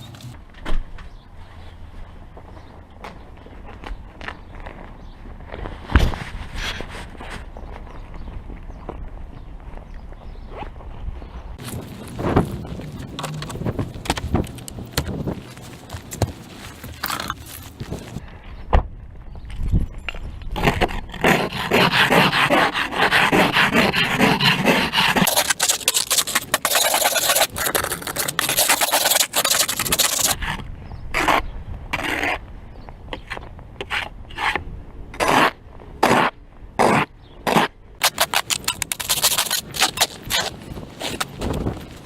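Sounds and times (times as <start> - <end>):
scraper scraping ice off car: 20.6 - 30.6, 35.2 - 41.3.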